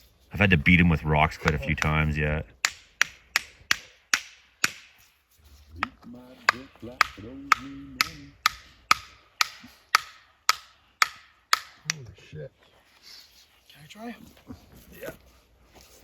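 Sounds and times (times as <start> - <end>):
hammer blows on metal fitting: 6.5 - 11.9.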